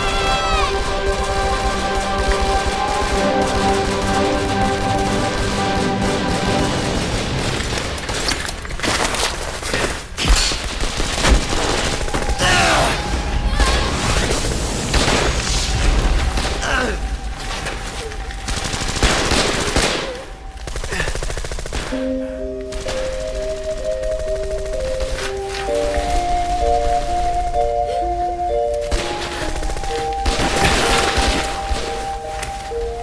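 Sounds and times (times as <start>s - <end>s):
film score music: 0.0s - 33.0s.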